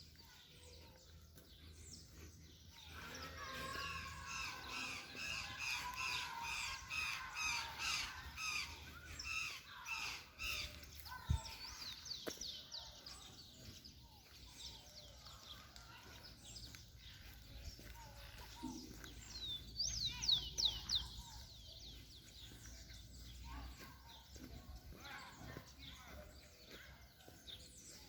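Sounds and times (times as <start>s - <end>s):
harsh repeated bird calls: 3.3s - 11.8s.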